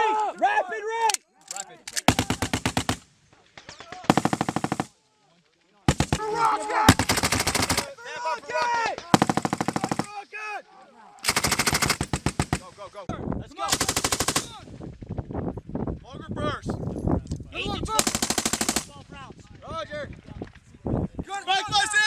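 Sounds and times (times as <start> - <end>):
machine gun bursts: 4.1 - 4.9, 6.9 - 7.9, 9.1 - 10.1, 11.2 - 12.9, 13.7 - 14.6, 18.0 - 18.9.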